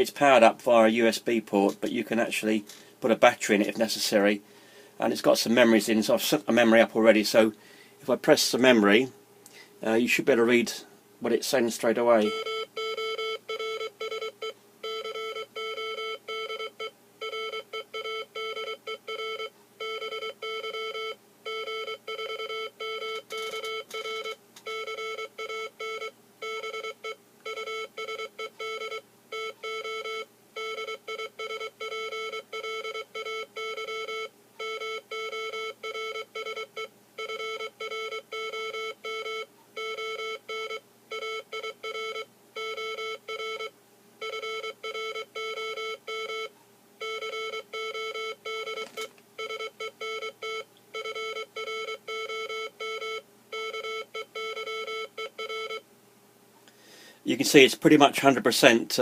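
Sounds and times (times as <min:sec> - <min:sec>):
morse code beeps: 0:12.2 - 0:55.8.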